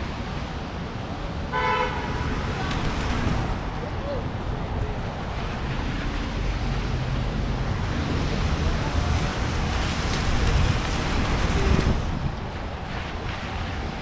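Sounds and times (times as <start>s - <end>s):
wind buffeting microphone: 7.4s - 14.0s.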